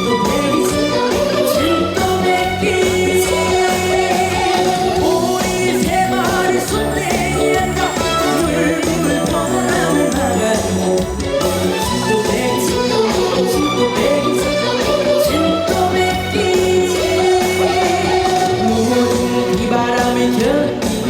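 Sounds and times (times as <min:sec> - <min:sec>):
person singing: 0:00.0 - 0:21.0
trot music backing track: 0:00.0 - 0:21.0.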